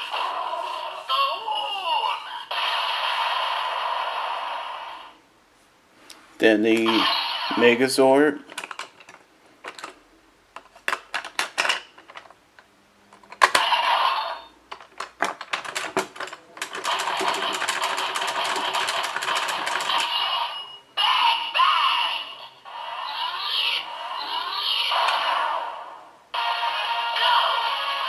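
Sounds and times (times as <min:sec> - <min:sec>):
toy voice call: 0:00.0 - 0:02.9, 0:06.8 - 0:07.8, 0:20.0 - 0:25.6, 0:26.4 - 0:28.0
toy electronic sound effects: 0:06.8 - 0:07.8, 0:13.5 - 0:14.6, 0:16.8 - 0:25.7.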